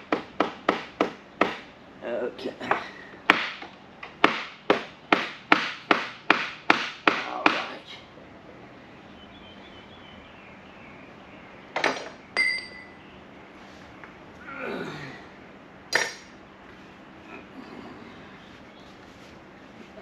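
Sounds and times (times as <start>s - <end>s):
metallic clink: 11.9s - 13.0s.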